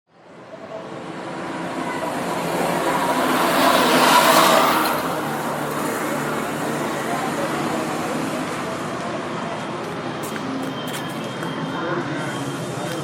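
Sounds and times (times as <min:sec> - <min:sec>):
road traffic hum: 0:00.1 - 0:13.0
vehicle passing close by: 0:01.2 - 0:09.0.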